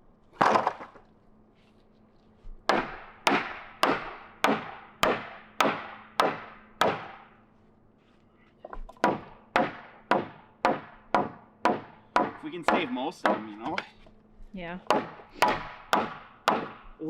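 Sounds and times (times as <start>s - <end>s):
hammer striking wood: 2.7s - 7.4s, 8.7s - 14.0s, 14.8s - 17.0s.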